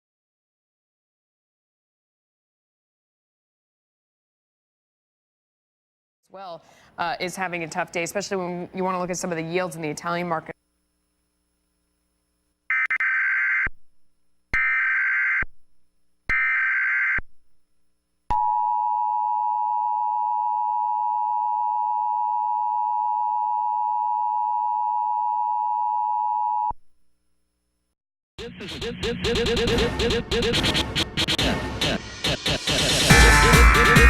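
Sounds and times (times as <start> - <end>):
data header bursts: 29.3 - 34.0.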